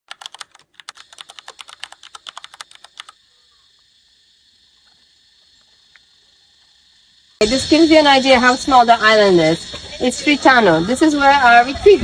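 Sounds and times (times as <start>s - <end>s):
rapid typing-like clicks: 0.1s - 3.7s
faint steady hiss: 1.0s - 12.0s.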